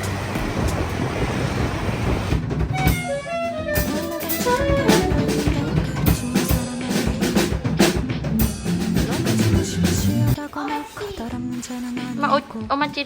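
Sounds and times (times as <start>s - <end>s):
drum kit beat: 2.3s - 13.0s
guitar melody: 2.8s - 7.8s.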